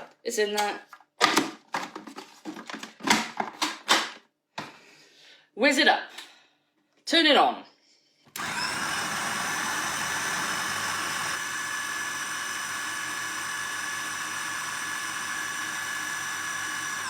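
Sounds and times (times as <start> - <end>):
blender motor whining: 8.4 - 17.0.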